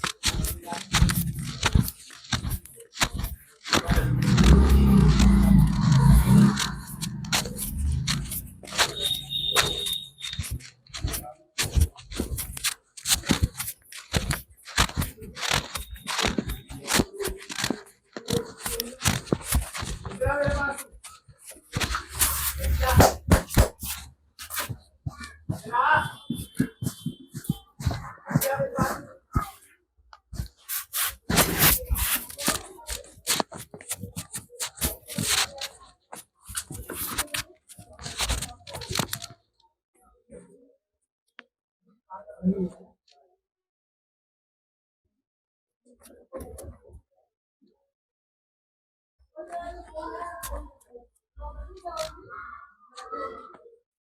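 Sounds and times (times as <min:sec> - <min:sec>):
hands rubbing and scratching hair: 0:00.0 - 0:29.5, 0:30.4 - 0:39.3.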